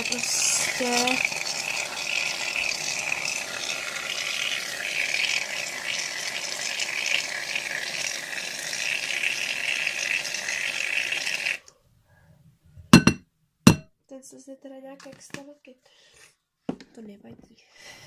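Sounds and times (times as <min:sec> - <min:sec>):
aerosol can spraying: 0:00.0 - 0:10.2.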